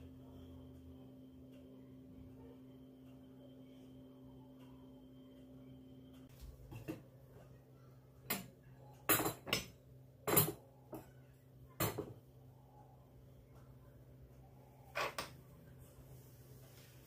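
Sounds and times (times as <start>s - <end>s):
dishes and cutlery clinking: 8.3s - 11.1s.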